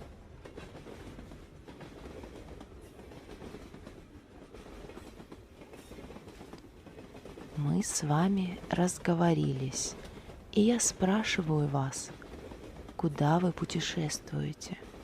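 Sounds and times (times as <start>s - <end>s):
train wheels clattering: 0.0s - 10.9s
train rumble: 0.0s - 15.0s.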